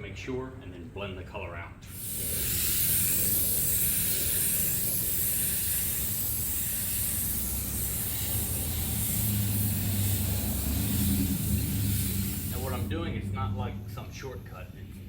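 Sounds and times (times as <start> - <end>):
spray gun air hissing: 1.9 - 13.2.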